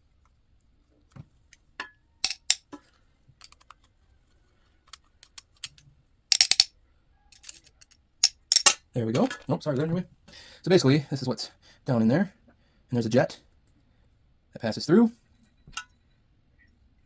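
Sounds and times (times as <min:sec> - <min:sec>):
screwdriver clicks on metal parts: 0:02.2 - 0:02.7, 0:04.9 - 0:06.7, 0:07.3 - 0:08.8
rattling clicks: 0:04.9 - 0:06.7, 0:07.4 - 0:08.8.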